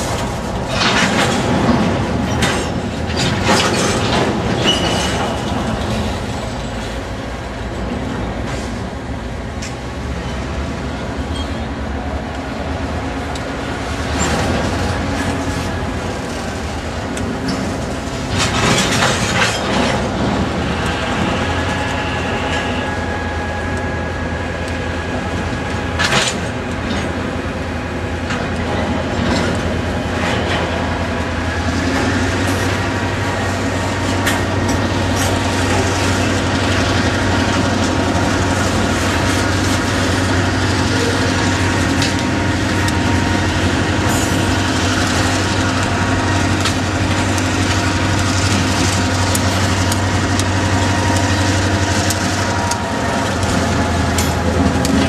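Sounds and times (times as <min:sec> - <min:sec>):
high wheel squeals: 0:11.2 - 0:11.8, 0:20.6 - 0:24.4
freight train wheels knocking: 0:12.2 - 0:55.0.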